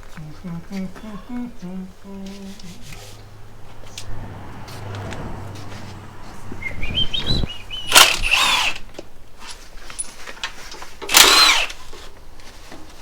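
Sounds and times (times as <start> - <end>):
power tool whirring bursts: 7.7 - 9.0, 11.0 - 11.9.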